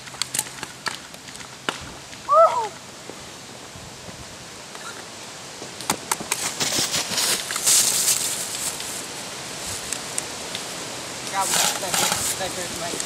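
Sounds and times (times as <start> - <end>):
dry leaves rustling and crunching: 6.4 - 13.0.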